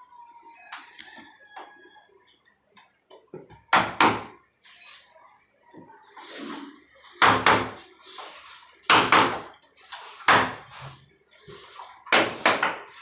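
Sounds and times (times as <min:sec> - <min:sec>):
hammer striking wooden door: 0:03.7 - 0:04.3, 0:07.2 - 0:07.8, 0:08.9 - 0:09.4, 0:10.3 - 0:10.6, 0:12.1 - 0:12.9.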